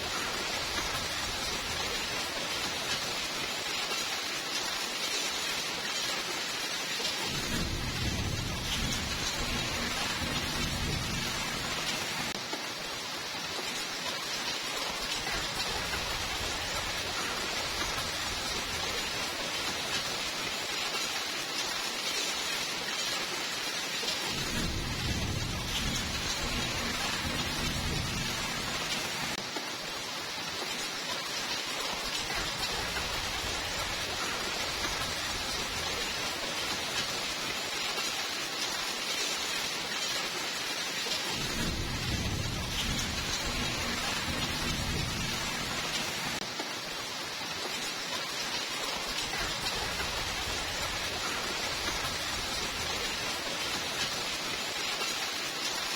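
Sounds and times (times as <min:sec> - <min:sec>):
heavy rainfall hissing: 0:00.0 - 0:55.9
low rolls of thunder: 0:07.2 - 0:12.3, 0:24.2 - 0:29.4, 0:41.3 - 0:46.4.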